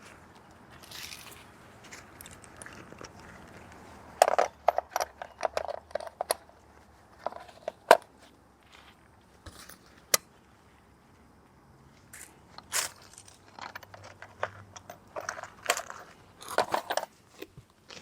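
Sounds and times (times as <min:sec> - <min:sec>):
hand tools clinking and clattering: 0:04.2 - 0:06.6, 0:12.2 - 0:17.2.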